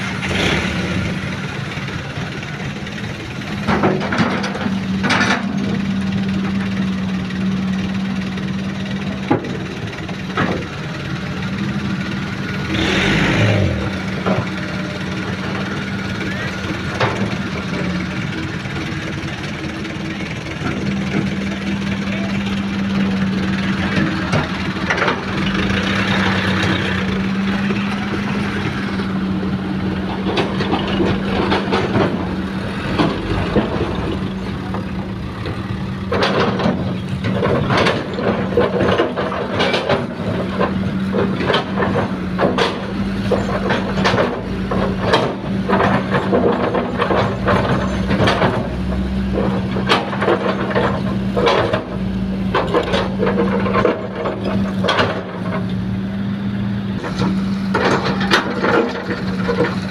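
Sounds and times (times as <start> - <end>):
diesel machinery running: 0.0 - 59.9
excavator knocking and clattering: 0.0 - 59.9.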